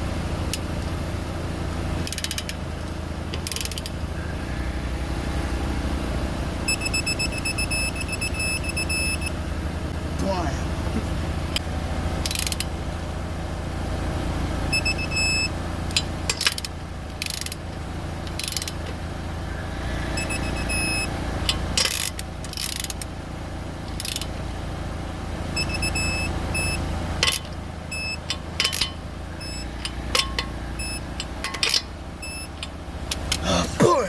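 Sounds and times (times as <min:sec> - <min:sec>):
steady low hum: 0:01.5 - 0:34.0
ratchet clicking: 0:02.0 - 0:04.3, 0:11.5 - 0:12.7, 0:15.9 - 0:19.0, 0:20.2 - 0:23.1, 0:23.8 - 0:24.4, 0:26.6 - 0:33.4.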